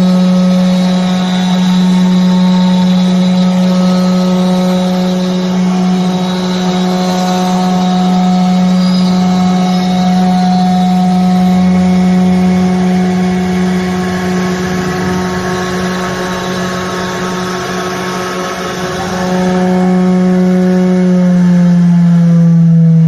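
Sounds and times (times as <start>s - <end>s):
router spindle cutting wood: 0.0s - 23.0s.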